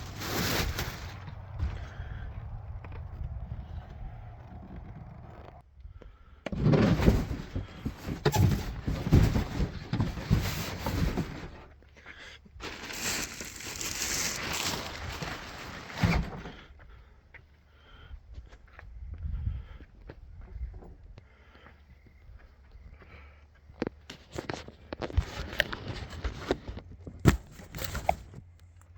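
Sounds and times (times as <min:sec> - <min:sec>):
cardboard and packing rustling: 0:00.0 - 0:01.8, 0:06.6 - 0:11.7, 0:12.6 - 0:16.6, 0:24.2 - 0:28.4.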